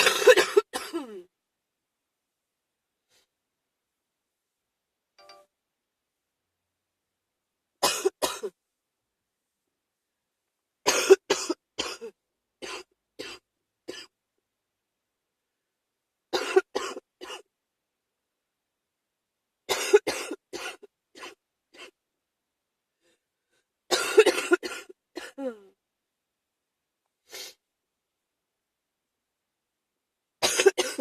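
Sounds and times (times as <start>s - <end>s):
person coughing: 0.0s - 1.3s, 7.8s - 8.5s, 10.9s - 14.1s, 16.4s - 17.4s, 19.7s - 22.0s, 23.9s - 25.7s, 30.4s - 31.0s.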